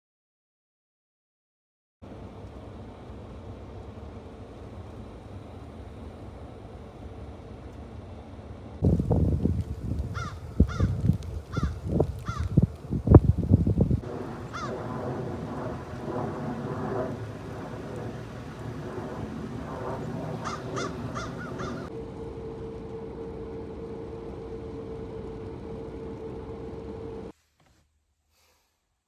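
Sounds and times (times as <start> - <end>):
wind on microphone: 8.8 - 21.9
steady hum: 8.8 - 27.3
crows cawing: 9.9 - 13.2, 14.2 - 14.9, 19.8 - 21.9.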